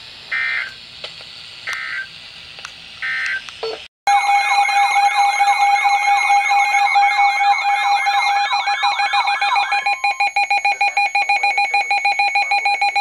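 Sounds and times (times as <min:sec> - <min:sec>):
sweeping siren tone: 0:04.1 - 0:10.9
fast-pulsing beep: 0:04.1 - 0:13.0
steady high tone: 0:04.1 - 0:13.0.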